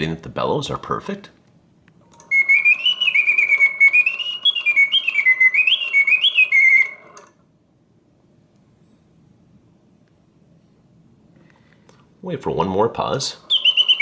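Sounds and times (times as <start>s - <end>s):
mechanical bird whistle singing: 2.2s - 7.2s, 13.4s - 14.0s.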